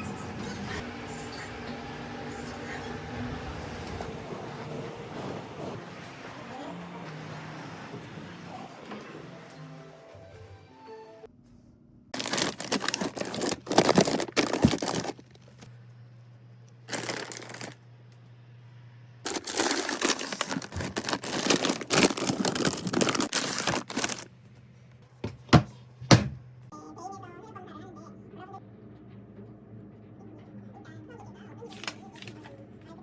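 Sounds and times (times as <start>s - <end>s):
crinkling and rustling: 12.2s - 15.7s, 16.9s - 17.8s, 19.2s - 24.6s.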